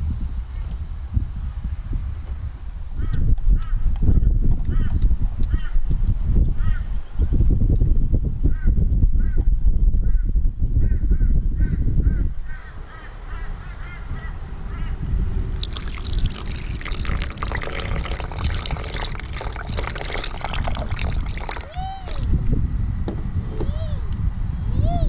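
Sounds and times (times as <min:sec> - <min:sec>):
water trickling and splashing: 0:15.0 - 0:22.3.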